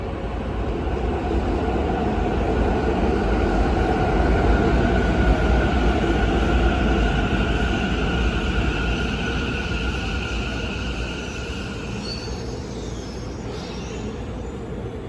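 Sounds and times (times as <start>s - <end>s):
train wheels rumbling on rail: 0.0s - 15.0s
faint high whine: 8.8s - 15.0s.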